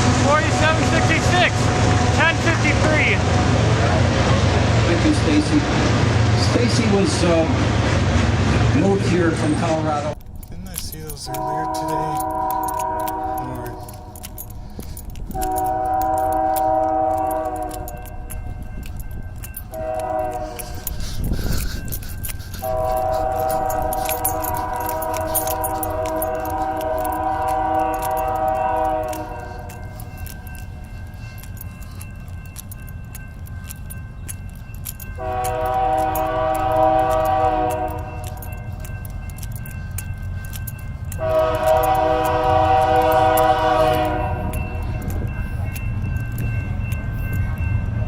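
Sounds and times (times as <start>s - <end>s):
train rushing noise: 0.0s - 48.0s
sharp ticks: 10.2s - 48.0s
locomotive air horn blasts: 11.3s - 13.9s, 15.3s - 18.0s, 19.7s - 20.9s, 22.5s - 29.9s, 35.2s - 38.4s, 41.2s - 44.6s.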